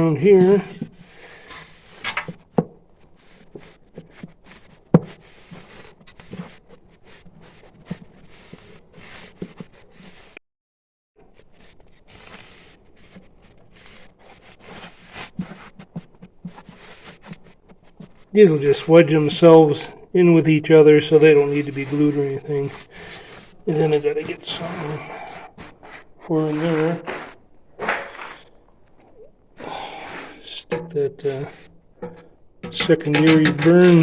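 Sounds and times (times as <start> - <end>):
board scraping against brick: 20.7 - 34.0
small knocks: 30.7 - 34.0.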